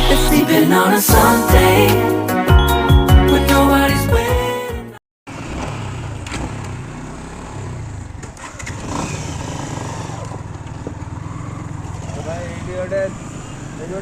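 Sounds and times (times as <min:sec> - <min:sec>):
motorcycle engine running: 0:05.3 - 0:14.0.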